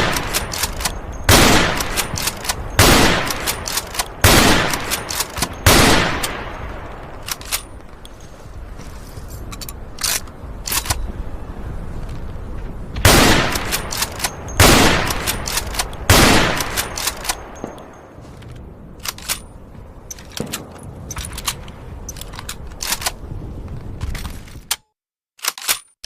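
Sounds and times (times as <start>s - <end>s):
rifle bolt clicks and clacks: 0.0s - 1.1s, 1.7s - 6.4s, 7.2s - 8.2s, 9.5s - 11.0s, 13.5s - 19.5s, 20.1s - 23.2s, 24.0s - 26.0s
rifle shots with echo: 0.0s - 6.9s, 13.0s - 17.8s.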